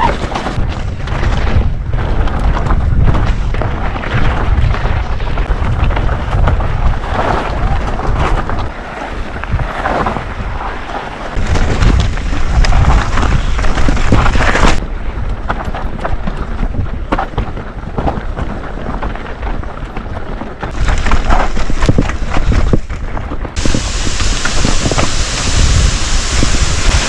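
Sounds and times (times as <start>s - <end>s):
bike knocks and rattles: 0.0s - 10.7s, 11.3s - 23.8s
wind buffeting microphone: 0.0s - 27.0s
tyres hissing on dirt trail: 23.6s - 27.0s.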